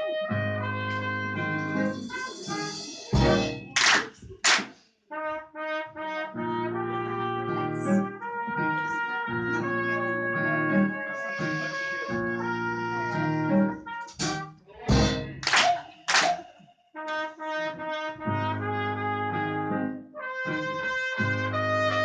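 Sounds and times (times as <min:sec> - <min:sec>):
brass instruments playing chords: 0:00.0 - 0:04.0, 0:05.1 - 0:22.0
sharp percussive hits: 0:01.9 - 0:04.8, 0:14.1 - 0:16.8.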